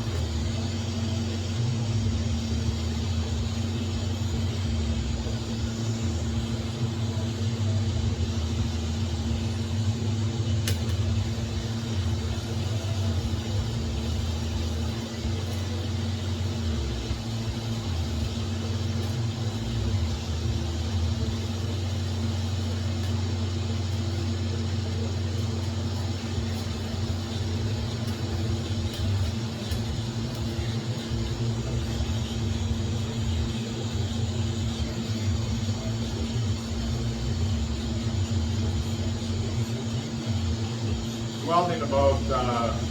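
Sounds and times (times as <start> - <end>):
welder electrical hum: 0.0 - 42.9
welding arc hissing: 0.0 - 42.9
sharp click: 10.6 - 11.0.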